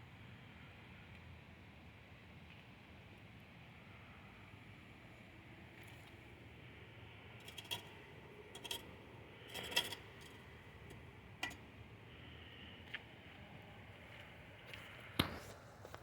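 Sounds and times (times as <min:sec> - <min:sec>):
light clicks and scuffs: 0:14.0 - 0:16.0.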